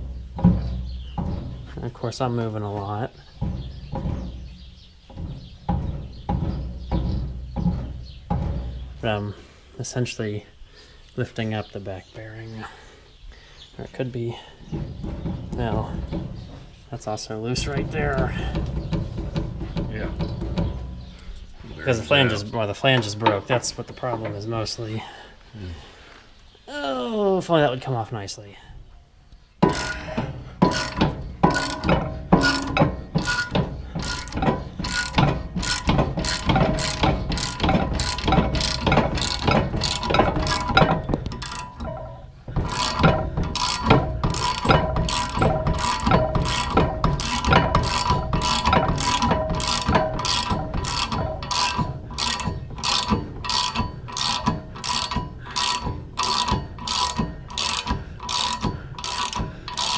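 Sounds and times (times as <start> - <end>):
ratchet wrench clicking: 30.6 - 41.8, 42.7 - 59.9.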